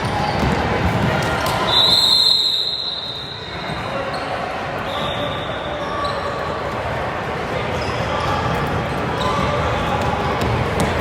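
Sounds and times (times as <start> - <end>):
crowd chatter: 0.0 - 11.0
basketball bouncing on court: 8.2 - 11.0.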